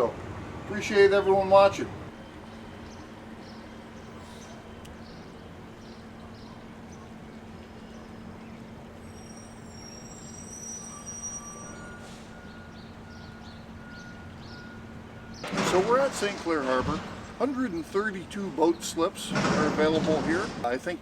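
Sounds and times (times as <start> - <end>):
constant low hum: 0.0 - 9.1
thin whistle-like tones: 9.0 - 15.4.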